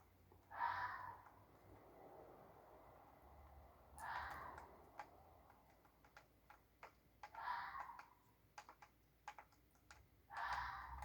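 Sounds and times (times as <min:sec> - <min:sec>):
faint clicks: 0:04.0 - 0:11.0.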